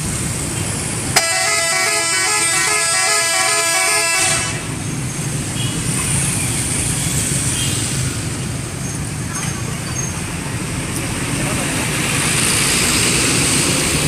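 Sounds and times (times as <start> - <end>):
bus musical horn tune: 1.2 - 4.7.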